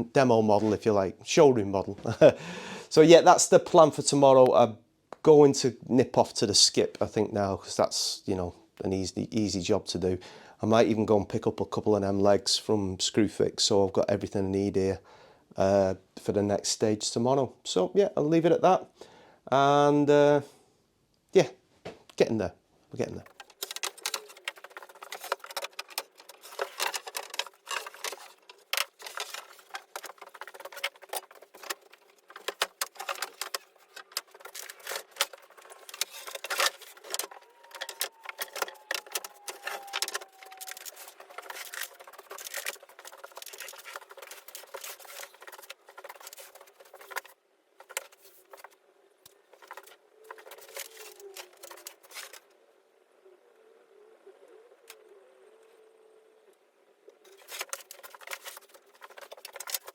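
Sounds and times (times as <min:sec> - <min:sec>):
rapid clattering and knocking: 0:23.2 - 0:48.8, 0:57.4 - 0:59.9.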